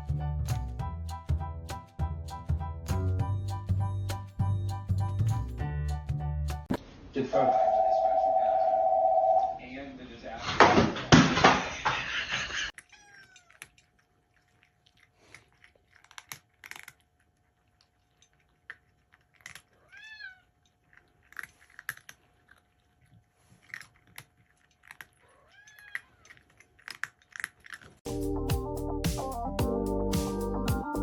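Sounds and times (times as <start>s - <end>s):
cat meowing: 12.8s - 13.6s, 19.8s - 20.5s, 25.2s - 26.4s.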